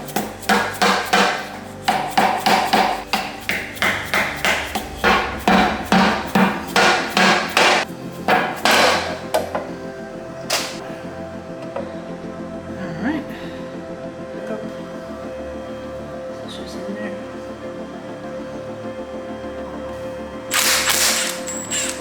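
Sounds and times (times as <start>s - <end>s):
hammer striking metal: 0.2s - 9.7s.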